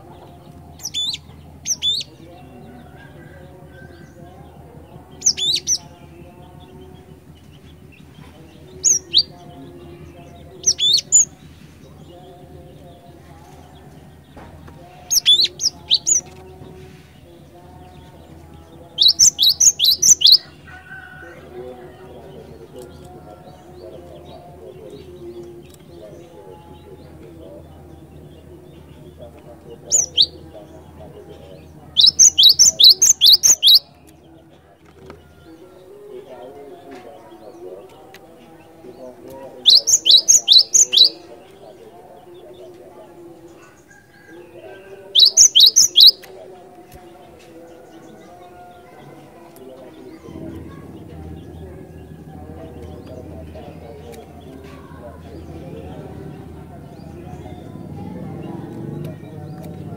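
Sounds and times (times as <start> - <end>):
bird calling sharp high notes: 32.0 - 33.9, 39.6 - 41.3, 45.2 - 46.3.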